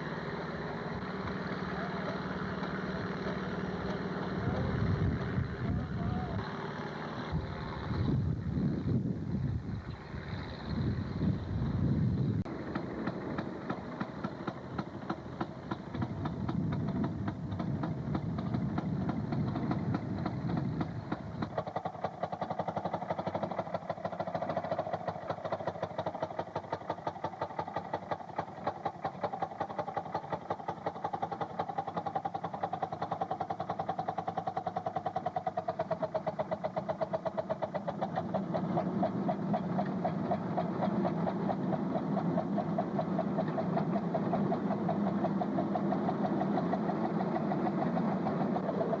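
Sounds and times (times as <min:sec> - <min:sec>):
two-stroke engine popping: 0:00.0 - 0:49.0.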